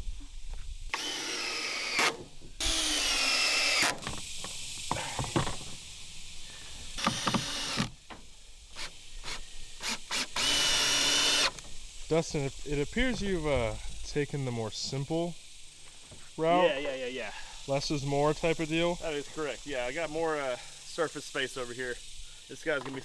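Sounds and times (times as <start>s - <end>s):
power drill motor whining: 0.9s - 5.8s, 6.9s - 8.0s, 8.7s - 13.4s.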